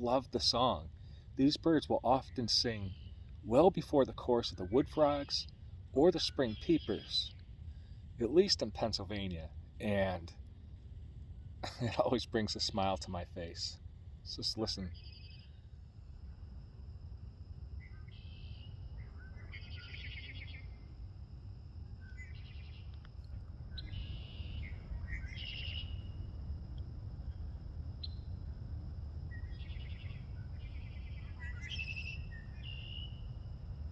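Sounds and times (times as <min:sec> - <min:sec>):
blackbirds singing: 0:01.4 - 0:07.4, 0:14.3 - 0:15.6, 0:17.8 - 0:20.8, 0:22.0 - 0:23.0, 0:23.7 - 0:26.4, 0:29.2 - 0:33.4
low rumble: 0:20.8 - 0:33.9.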